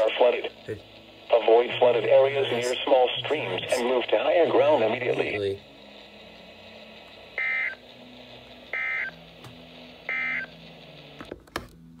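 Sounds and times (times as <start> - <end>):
faint steady hum: 0.0 - 12.0
warbling data tone chirps: 7.4 - 7.9, 8.7 - 9.2, 10.1 - 10.6.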